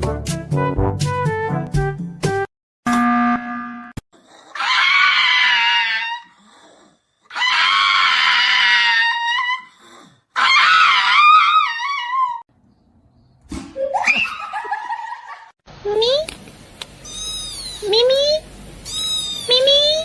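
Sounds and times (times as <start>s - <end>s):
cat yowling: 4.6s - 6.3s, 7.3s - 9.7s, 10.4s - 12.4s, 18.8s - 19.5s.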